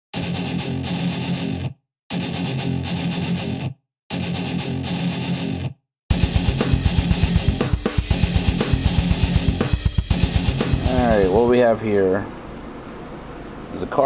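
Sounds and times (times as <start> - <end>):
distorted electric guitar chords: 0.1 - 11.6
fast drum beat: 6.1 - 11.5.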